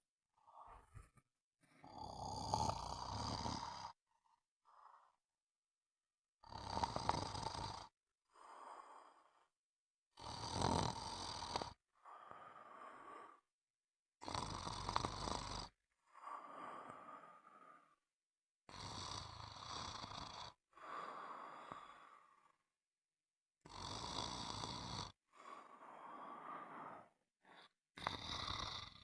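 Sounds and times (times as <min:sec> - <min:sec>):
quiet breath: 0:00.3 - 0:02.0, 0:03.5 - 0:05.2, 0:08.3 - 0:09.6, 0:11.9 - 0:13.5, 0:16.0 - 0:18.1, 0:20.7 - 0:22.8, 0:25.3 - 0:29.0
person snoring: 0:01.8 - 0:04.0, 0:06.4 - 0:09.5, 0:10.2 - 0:13.4, 0:14.2 - 0:18.0, 0:18.7 - 0:22.6, 0:23.6 - 0:29.0.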